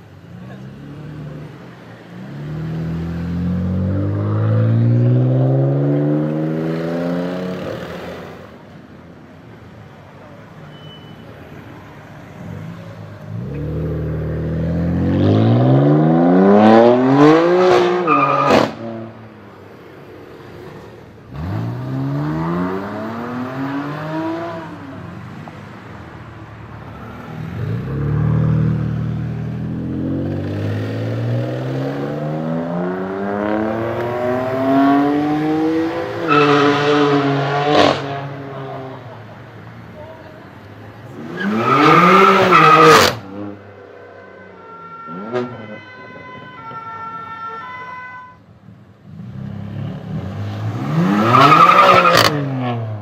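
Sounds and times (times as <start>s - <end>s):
loud car engine revving: 2.2s - 8.4s, 13.2s - 19.1s, 21.3s - 25.0s, 27.5s - 39.2s, 41.0s - 43.6s, 49.1s - 53.0s.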